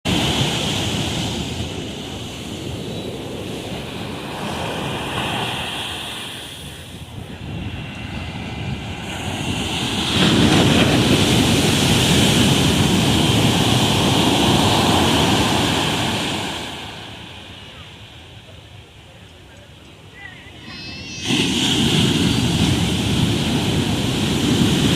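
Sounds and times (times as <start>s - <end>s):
ocean surf on a beach: 0.0s - 24.9s
wave breaking: 20.2s - 24.9s.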